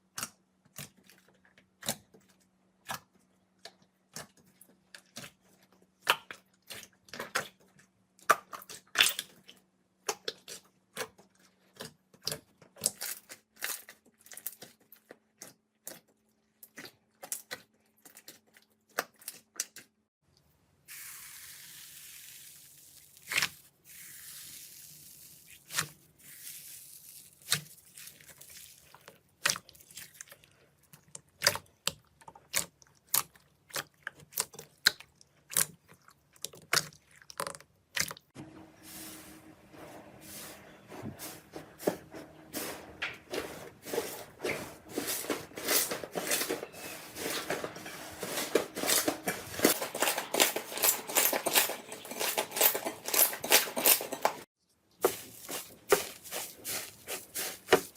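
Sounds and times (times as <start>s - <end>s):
slime squelching and popping: 22.3s - 38.3s.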